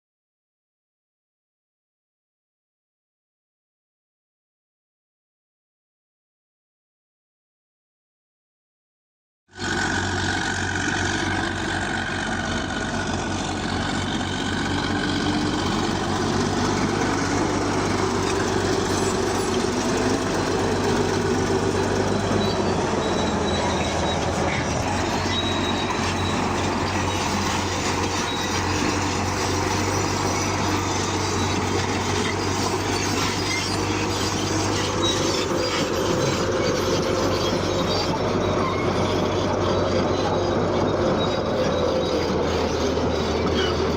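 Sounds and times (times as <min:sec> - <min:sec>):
bulldozer engine drone: 0:09.5 - 0:43.9
steel tracks squealing and clanking: 0:09.6 - 0:43.9.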